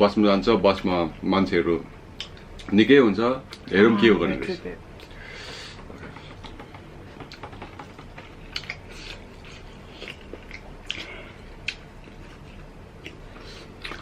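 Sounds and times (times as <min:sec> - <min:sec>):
chewing crunchy snacks: 0:08.1 - 0:14.0.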